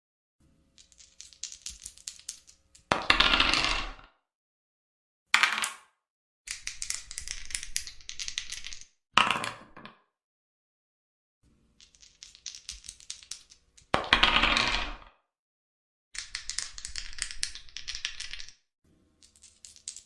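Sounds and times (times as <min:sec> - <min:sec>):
dice rattling and rolling: 0:00.8 - 0:04.0, 0:06.5 - 0:09.9, 0:11.8 - 0:15.1, 0:16.2 - 0:18.6, 0:19.2 - 0:20.0.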